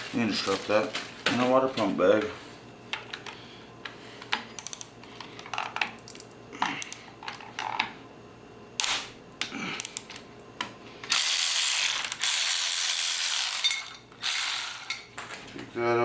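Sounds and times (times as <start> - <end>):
plastic bag rustling: 0.0 - 2.4.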